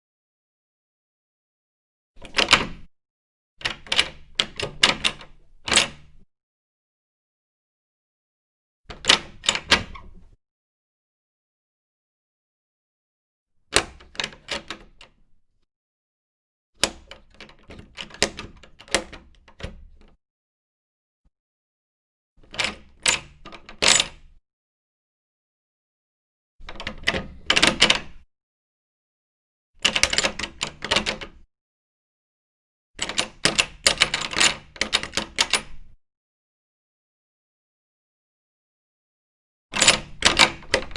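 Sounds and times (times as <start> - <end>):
door knob clicking and rattling: 2.2 - 2.9, 3.6 - 6.2, 8.9 - 10.3, 13.7 - 15.2, 16.8 - 20.2, 22.4 - 24.2, 26.6 - 28.2, 29.8 - 31.4, 33.0 - 35.9, 39.8 - 40.9
door knob latch clicking: 2.2 - 2.9, 3.6 - 6.1, 39.8 - 40.9.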